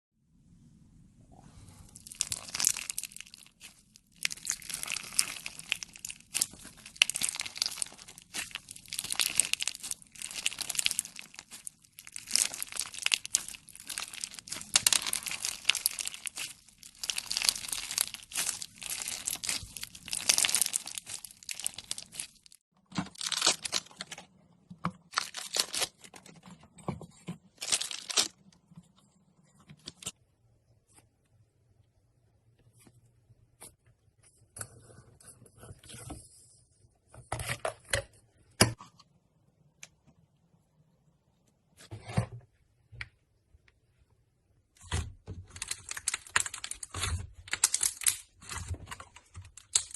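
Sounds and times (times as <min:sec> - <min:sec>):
slime crackling and popping: 0:02.0 - 0:24.1, 0:27.6 - 0:28.3, 0:45.4 - 0:49.9.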